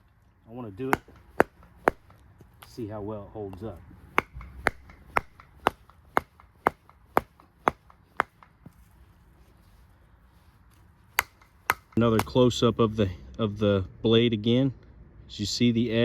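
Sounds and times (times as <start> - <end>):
knife batoned into log knocks: 4.2 - 8.5.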